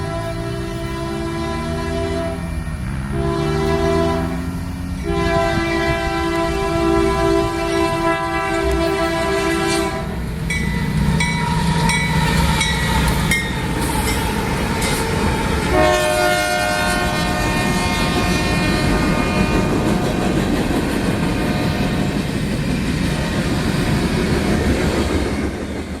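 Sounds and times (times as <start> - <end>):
train horn: 0.0 - 10.3, 11.2 - 20.4, 21.3 - 22.2
train rumble: 0.0 - 26.0
wheels clacking over rail joints: 0.0 - 26.0.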